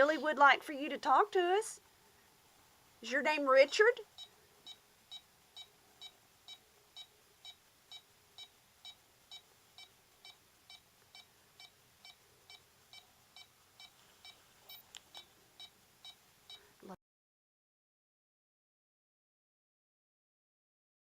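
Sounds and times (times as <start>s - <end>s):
faint electronic meter beeps: 4.0s - 16.8s.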